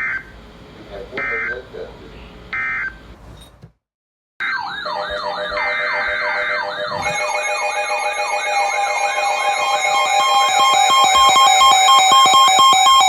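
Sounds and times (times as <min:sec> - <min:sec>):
electronic yelp siren: 0:04.4 - 0:13.0
electronic alert tones: 0:05.2 - 0:13.0.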